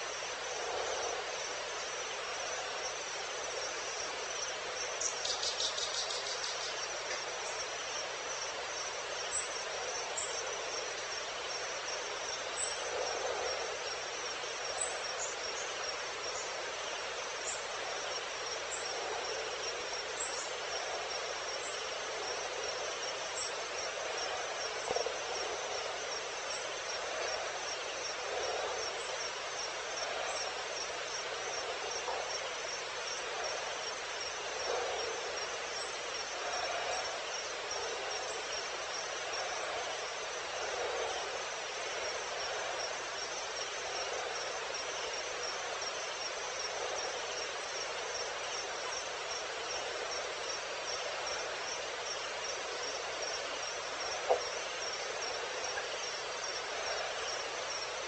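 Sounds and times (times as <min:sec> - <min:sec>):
insects chorus: 0:00.0 - 0:58.0.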